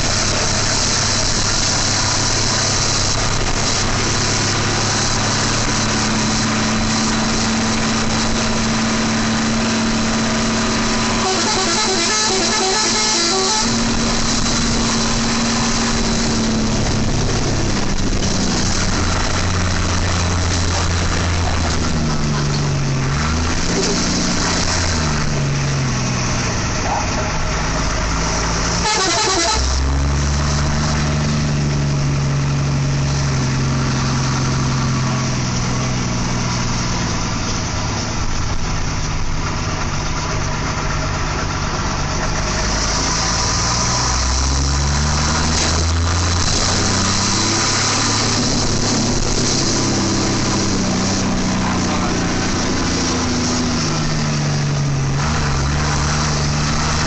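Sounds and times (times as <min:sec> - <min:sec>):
traffic and engines: 0:00.0 - 0:57.0
bus multi-tone horn tune: 0:10.5 - 0:14.4, 0:28.6 - 0:30.2.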